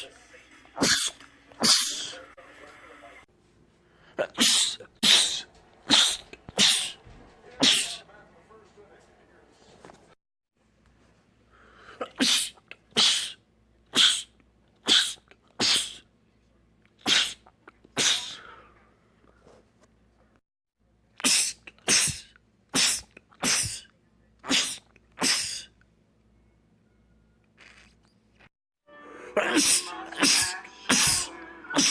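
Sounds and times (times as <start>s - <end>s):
man sneezing: 0.8s - 2.2s, 4.2s - 7.0s, 7.6s - 8.0s, 12.0s - 16.0s, 17.0s - 18.6s, 21.2s - 25.7s, 29.4s - 31.9s.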